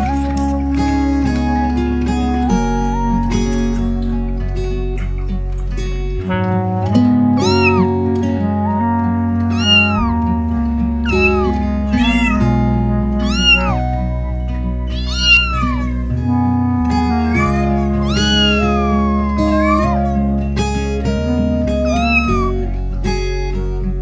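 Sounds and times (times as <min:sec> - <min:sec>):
background music: 0:00.0 - 0:24.0
cat meowing: 0:07.3 - 0:07.9, 0:09.5 - 0:10.2, 0:11.0 - 0:12.5, 0:13.2 - 0:13.8, 0:14.9 - 0:20.7, 0:21.7 - 0:22.7.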